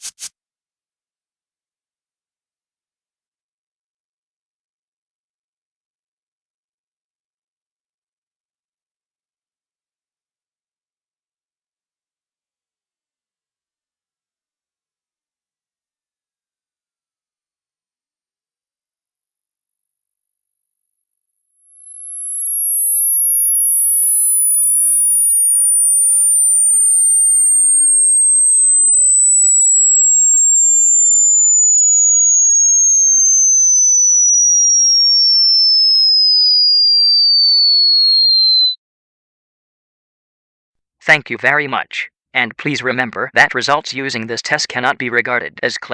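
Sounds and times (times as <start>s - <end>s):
sine tone sweeping down: 12.2s - 38.8s.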